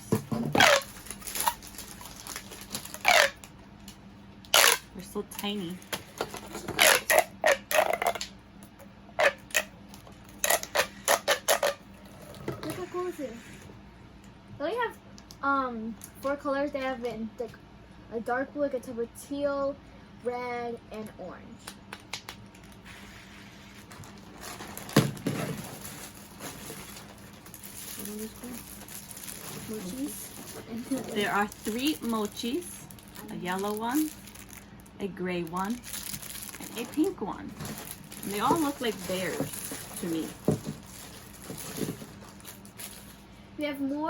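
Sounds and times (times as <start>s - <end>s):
plastic packaging rustling: 0.0s - 8.3s, 22.5s - 43.3s.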